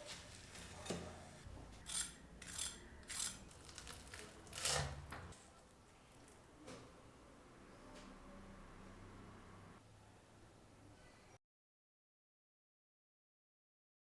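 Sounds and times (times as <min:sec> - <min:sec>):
crisp scraping or crunching: 0:02.5 - 0:05.0.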